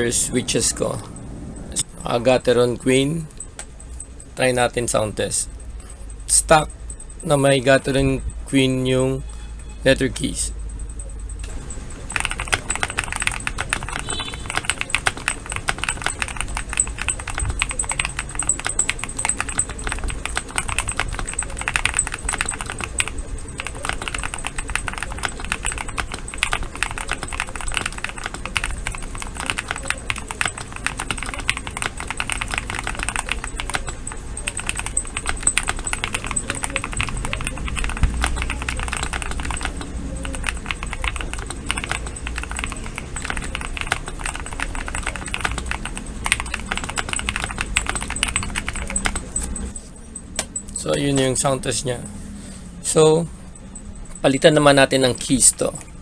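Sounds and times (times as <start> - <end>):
mechanical keyboard typing: 10.1 - 51.8.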